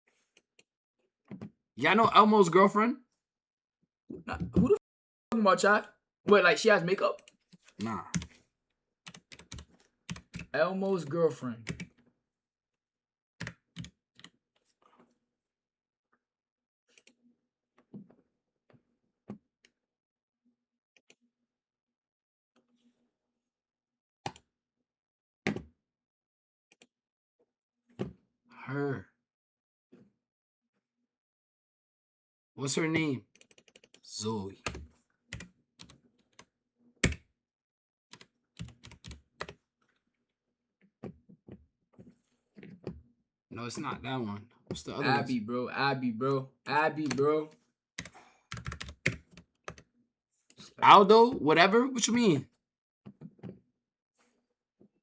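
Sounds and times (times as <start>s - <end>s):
typing on computer keyboard: 9.1s - 10.5s, 38.1s - 39.6s, 48.0s - 49.8s.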